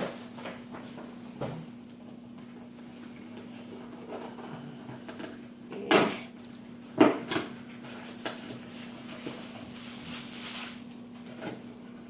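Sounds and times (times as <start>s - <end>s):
wrapping paper rustling: 7.9s - 11.5s.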